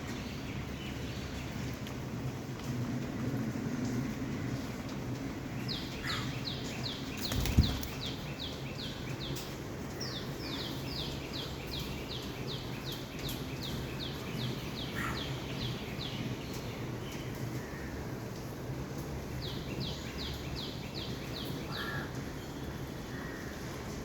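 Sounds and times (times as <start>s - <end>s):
bird singing: 5.6s - 17.3s, 19.4s - 22.7s.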